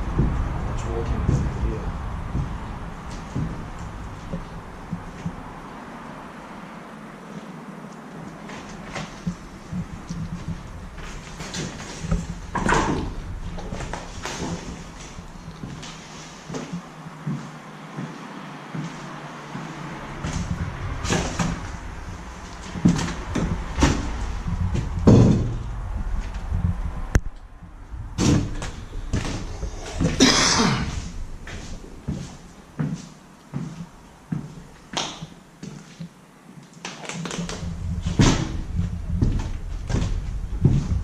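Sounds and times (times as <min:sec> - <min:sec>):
irregular knocks and thuds: 0:00.0 - 0:05.6, 0:08.5 - 0:18.1, 0:20.1 - 0:34.5, 0:37.4 - 0:41.0
low rumble: 0:00.0 - 0:05.9, 0:08.8 - 0:16.0, 0:19.8 - 0:32.8, 0:37.5 - 0:41.0.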